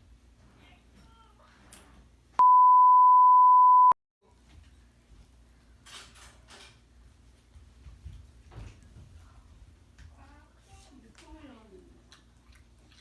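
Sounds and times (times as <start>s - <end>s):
censor bleep tone: 2.4s - 4.0s.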